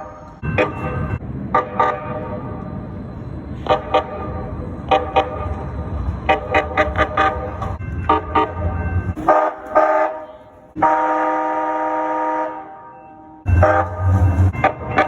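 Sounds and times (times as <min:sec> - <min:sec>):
train warning bell: 0:00.0 - 0:01.2, 0:03.8 - 0:11.0, 0:12.7 - 0:15.0
train rumble: 0:00.0 - 0:12.2, 0:13.4 - 0:15.0
train horn: 0:09.2 - 0:15.0.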